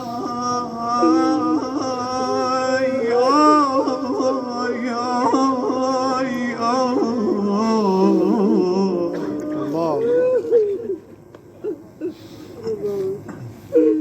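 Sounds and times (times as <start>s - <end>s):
man singing a lament: 0.0s - 11.1s.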